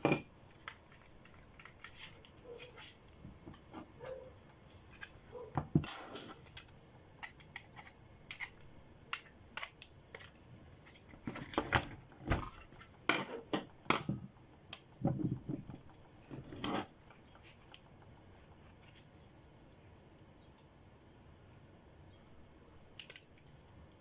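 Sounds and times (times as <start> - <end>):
hands handling battery pack: 0.5 - 3.6.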